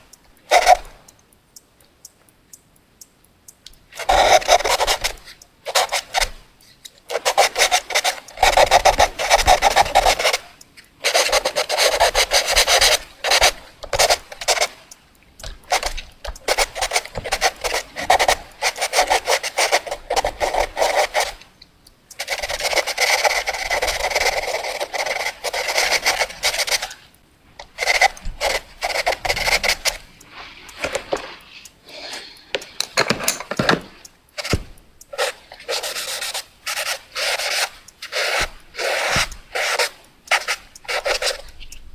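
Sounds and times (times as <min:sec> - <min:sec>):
pencil scribbling on paper: 0:04.0 - 0:06.4, 0:07.1 - 0:14.8, 0:15.5 - 0:21.4, 0:22.2 - 0:27.0, 0:27.7 - 0:30.0, 0:34.4 - 0:41.5.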